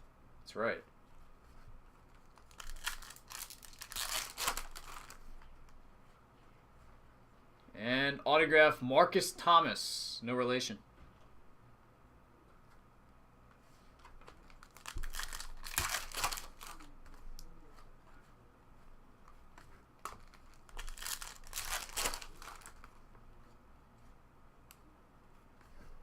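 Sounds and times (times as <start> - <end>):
card pack wrapper crinkling: 2.2 - 5.2, 14.4 - 16.9, 20.0 - 23.0.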